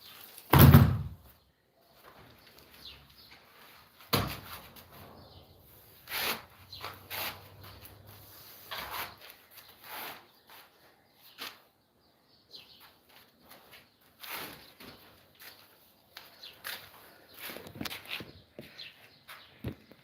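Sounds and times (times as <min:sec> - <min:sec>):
short scraping sounds: 0:05.9 - 0:10.8.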